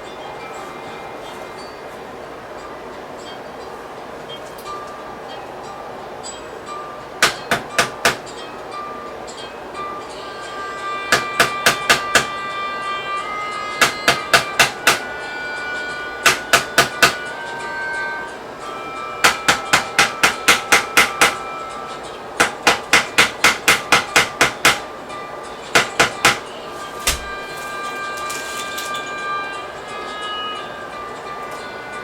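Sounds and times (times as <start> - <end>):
hammer blows: 7.2 - 8.3, 10.2 - 24.9, 25.6 - 30.6.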